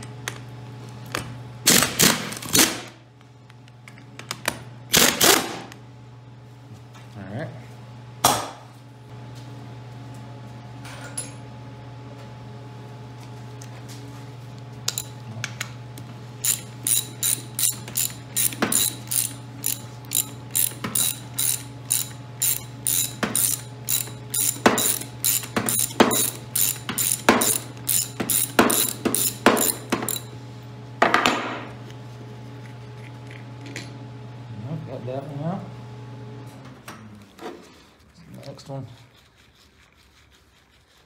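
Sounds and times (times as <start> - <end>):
ratchet wrench clicking: 14.9 - 15.1, 16.4 - 30.3
ratchet wrench rasp: 16.4 - 30.3.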